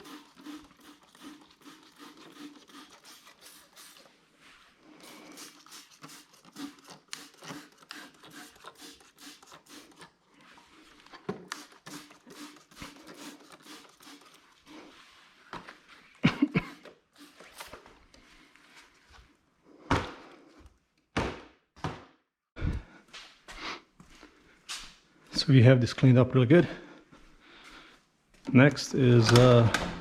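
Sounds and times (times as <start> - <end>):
rubbing strokes cleaning metal: 0.0 - 4.2, 5.0 - 10.2, 11.5 - 15.1.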